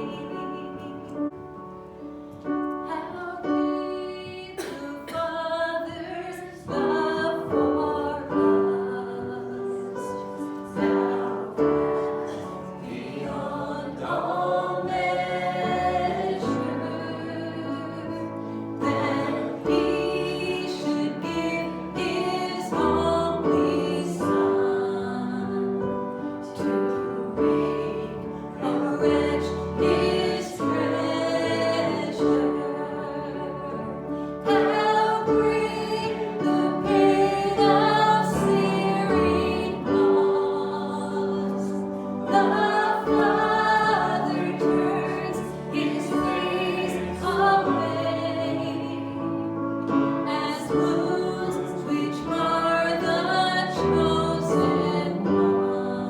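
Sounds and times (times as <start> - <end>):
group singing a worship song: 0.0 - 1.4, 2.5 - 56.0.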